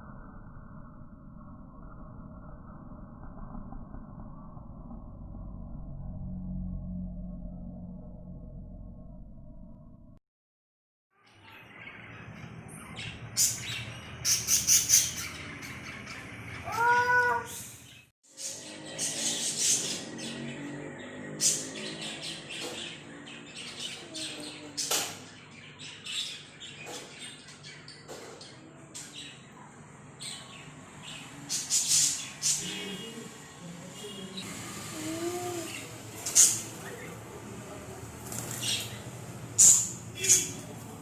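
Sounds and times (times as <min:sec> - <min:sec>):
low droning music: 0:04.6 - 0:10.2
lovebirds chirping and squawking: 0:11.2 - 0:29.5, 0:30.2 - 0:33.1, 0:35.0 - 0:37.2, 0:38.3 - 0:40.8.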